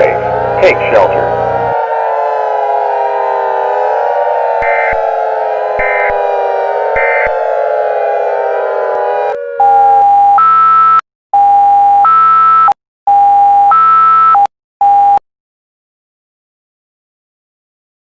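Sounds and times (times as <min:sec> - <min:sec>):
electronic sirens wailing: 0:00.0 - 0:15.2
buzzy electronic alert tones: 0:09.6 - 0:11.0.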